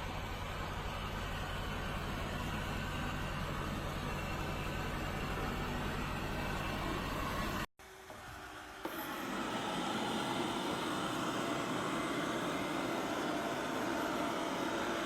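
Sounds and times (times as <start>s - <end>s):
robot vacuum cleaner whirring: 4.1s - 15.0s.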